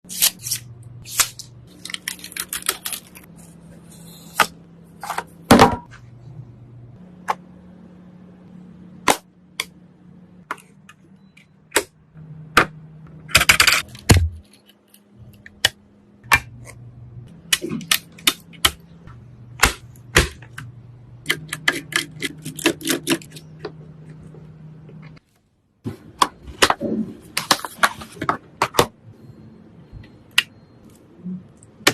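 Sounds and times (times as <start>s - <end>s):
computer parts clicking and knocking: 12.6s - 16.5s.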